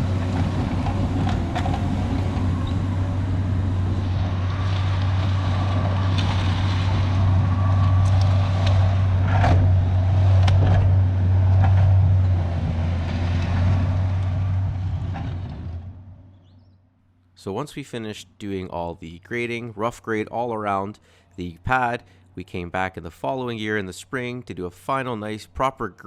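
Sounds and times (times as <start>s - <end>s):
diesel engine under load: 0.0s - 16.8s.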